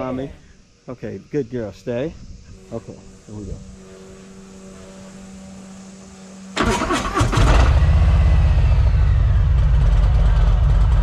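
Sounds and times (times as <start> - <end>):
steady hum: 0.0 - 11.0
motorcycle engine idling: 6.5 - 11.0
starter motor cranking: 6.6 - 8.1.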